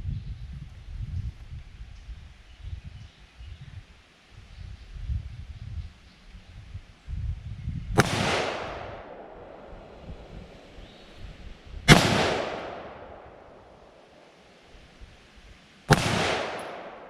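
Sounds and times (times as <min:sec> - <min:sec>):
rifle shots with echo: 0:08.0 - 0:14.2, 0:15.9 - 0:17.0.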